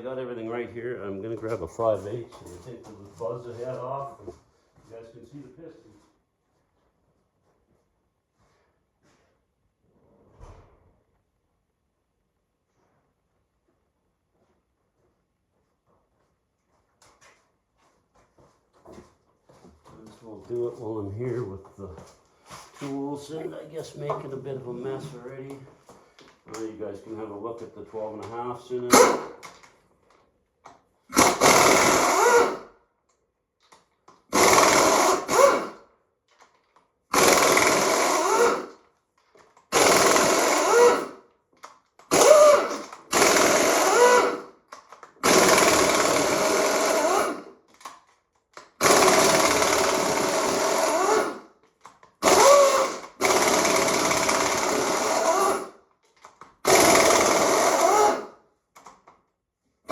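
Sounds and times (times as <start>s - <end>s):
power wrench bursts: 28.9s - 29.5s, 31.1s - 32.7s, 34.3s - 35.8s, 37.1s - 38.8s, 39.7s - 41.2s, 42.0s - 44.6s, 45.2s - 47.6s, 48.7s - 51.5s, 52.2s - 55.8s, 56.6s - 58.4s.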